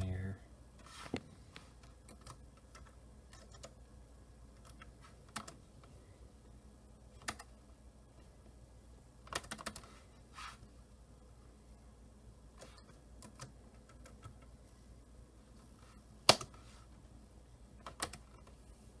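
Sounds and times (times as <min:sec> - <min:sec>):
computer keyboard keystrokes: 0:01.8 - 0:03.8, 0:04.6 - 0:05.6, 0:07.2 - 0:07.5, 0:09.3 - 0:09.9, 0:12.6 - 0:14.5, 0:16.3 - 0:16.6, 0:17.8 - 0:18.5.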